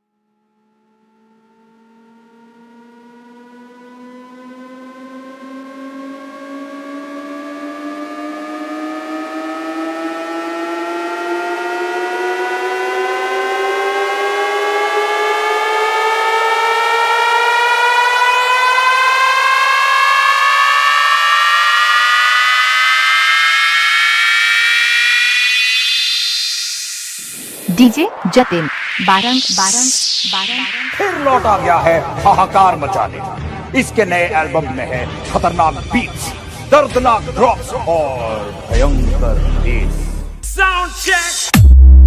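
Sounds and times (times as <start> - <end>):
buzzy synthesized riser tone: 0.5 - 42.0
gliding synth tones: 24.2 - 37.3.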